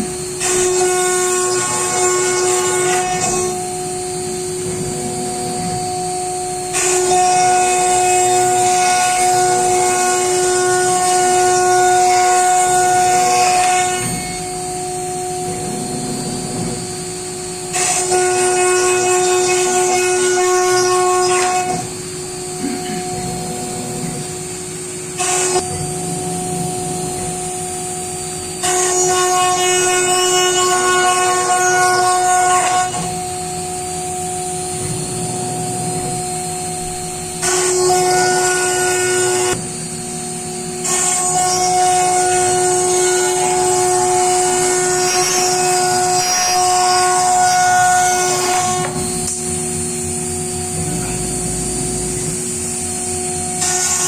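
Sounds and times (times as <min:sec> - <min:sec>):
router spindle whining: 0:30.6 - 0:54.0.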